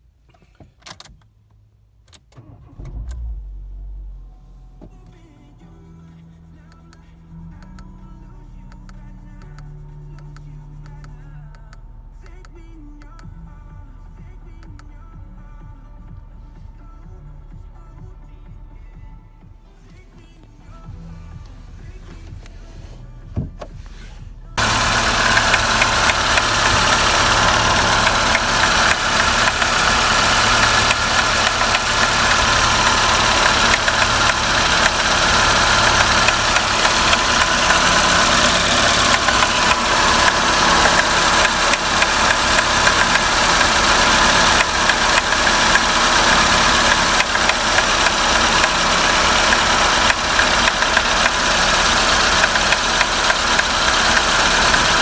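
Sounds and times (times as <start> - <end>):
car engine idling: 19.8 - 55.0
rapid clicking ticks: 24.6 - 55.0.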